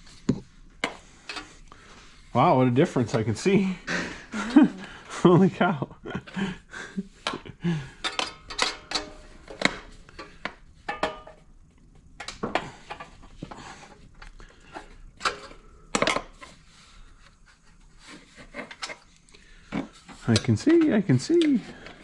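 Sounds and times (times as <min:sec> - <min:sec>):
metal tools clinking and knocking: 0:08.0 - 0:09.3.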